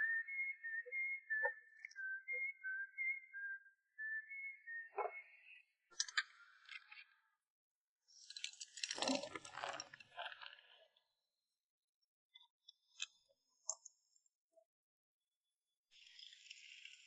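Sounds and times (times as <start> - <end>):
wavering whistle-like tone: 0.0 - 5.6.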